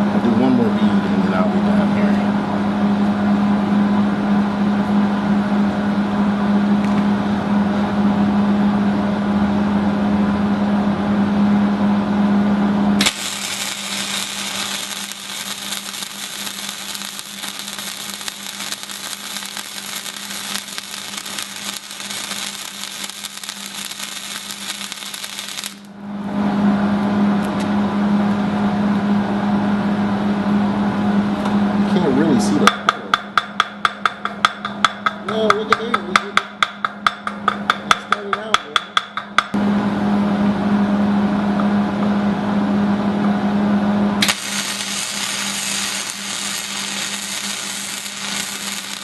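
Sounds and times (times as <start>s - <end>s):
welding crackling hiss: 13.0s - 25.9s, 44.2s - 49.0s
welder buzzing hum: 13.0s - 26.0s, 44.2s - 49.0s.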